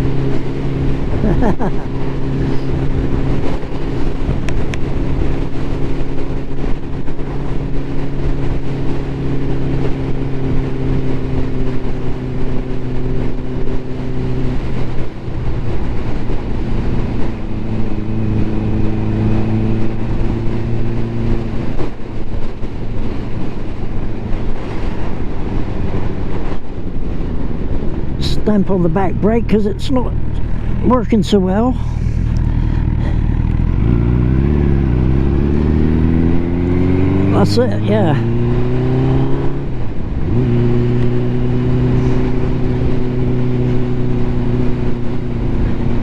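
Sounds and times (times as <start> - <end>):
road noise: 0.0 - 46.0
motorcycle engine running: 27.1 - 46.0.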